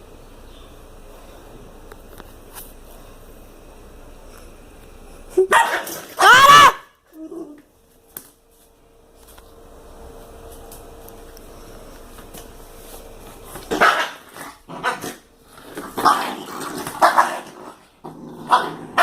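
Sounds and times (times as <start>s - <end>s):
dog barking and snarling: 5.5s - 6.8s, 13.7s - 15.3s, 15.9s - 19.0s.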